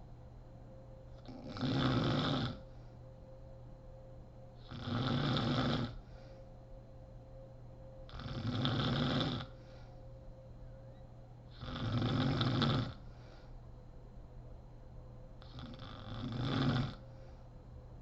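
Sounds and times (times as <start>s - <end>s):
quiet breathing: 1.1s - 3.6s, 4.5s - 14.0s, 15.4s - 18.0s
woman snoring: 1.3s - 2.7s, 4.6s - 6.0s, 8.1s - 9.6s, 11.5s - 13.0s, 15.4s - 17.0s.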